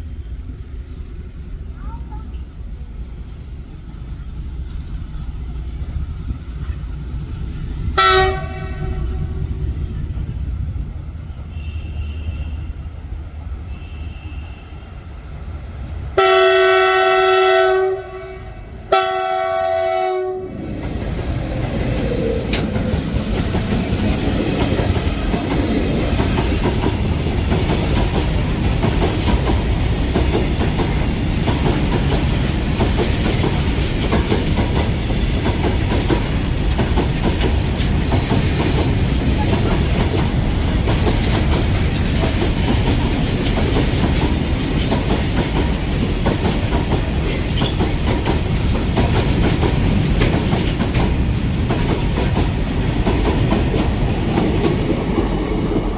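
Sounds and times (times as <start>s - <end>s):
freight train rumbling past: 0.0s - 55.9s
train horn blasts: 8.0s - 9.4s, 11.4s - 12.9s, 13.6s - 14.9s, 16.2s - 20.6s
wheels clattering on rails: 20.7s - 55.9s.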